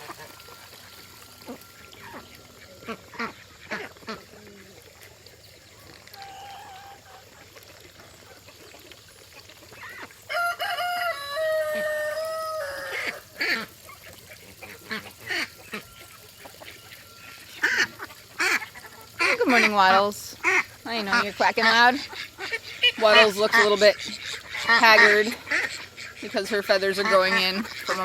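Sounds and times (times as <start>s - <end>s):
rooster crowing: 10.3s - 13.3s.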